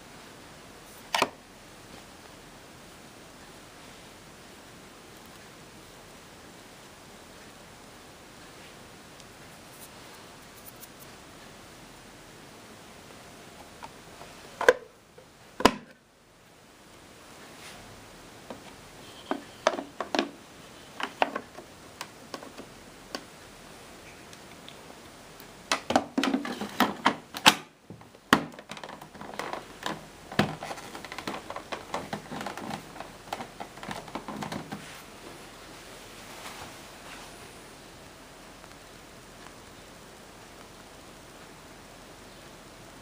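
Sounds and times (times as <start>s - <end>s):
rustling: 6.8s - 11.8s, 17.0s - 27.4s, 28.0s - 42.6s.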